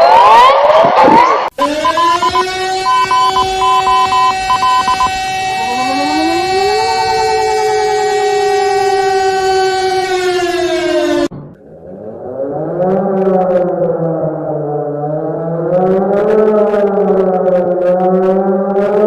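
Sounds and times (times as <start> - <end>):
tone gliding up: 0.0 - 19.0
fast beeping: 1.6 - 6.0
two-note siren: 1.6 - 19.0.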